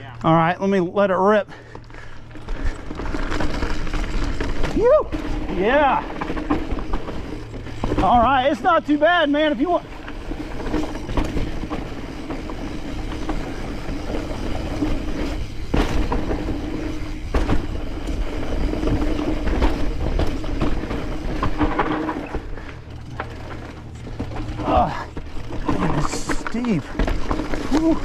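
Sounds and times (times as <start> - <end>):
bike chain and frame rattling: 0.0 - 28.0
tyres crunching over rock: 1.8 - 28.0
sharp knocks from bike hits: 15.5 - 22.4.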